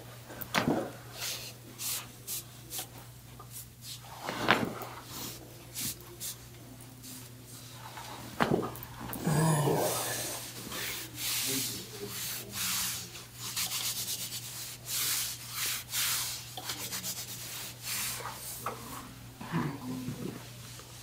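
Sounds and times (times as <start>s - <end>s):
hands rubbing on clothing: 10.4s - 18.6s.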